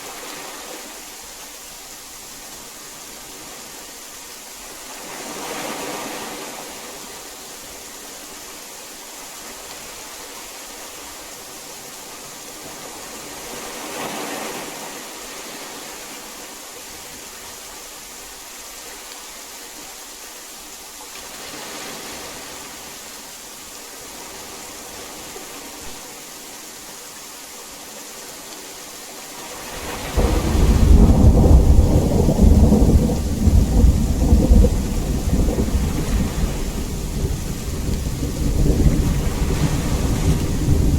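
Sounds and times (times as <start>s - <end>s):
heavy rain: 0.0s - 40.9s
deep rumble of thunder: 29.8s - 40.9s.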